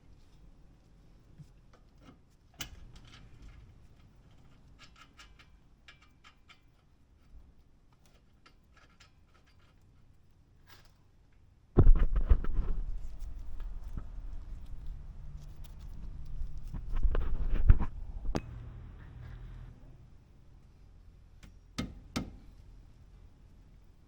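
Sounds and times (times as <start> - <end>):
sudden loud knock: 11.8 - 12.2.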